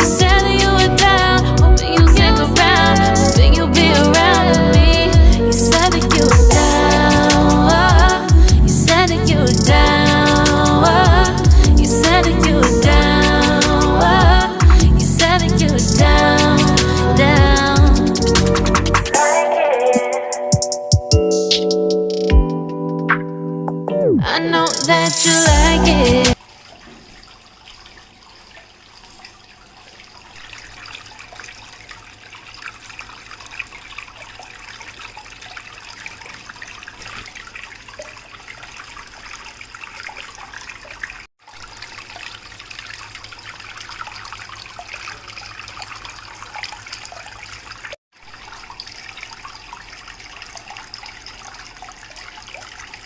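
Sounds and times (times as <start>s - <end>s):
water trickling down fountain: 26.3s - 53.0s.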